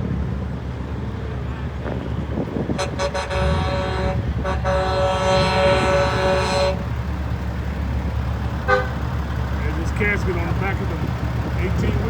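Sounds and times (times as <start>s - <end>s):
truck engines rumbling: 0.0s - 12.0s
truck train horn blasts: 2.6s - 7.3s, 8.6s - 9.2s.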